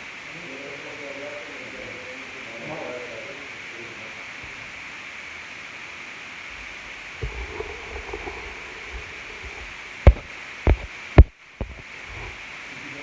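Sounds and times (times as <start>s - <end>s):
steady hiss: 0.0s - 13.0s
loud dull thumps: 7.2s - 11.8s.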